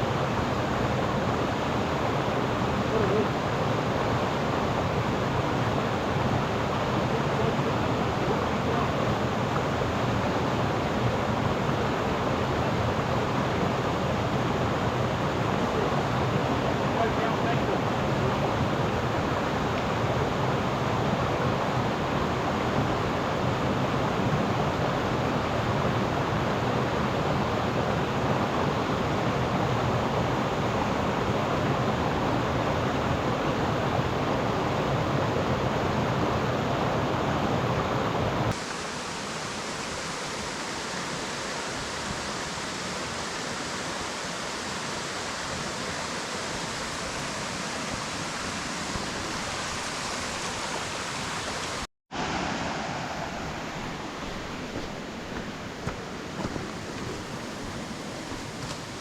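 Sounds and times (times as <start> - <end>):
hissy rush of water: 0.0 - 59.0
waterfall rushing: 36.8 - 59.0.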